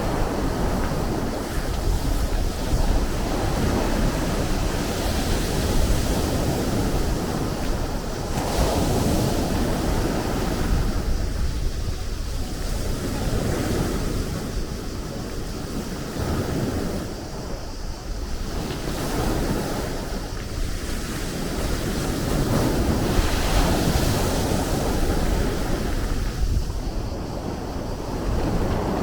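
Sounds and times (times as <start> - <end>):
waves breaking: 0.0 - 29.0
wind rumbling on microphone: 0.0 - 29.0.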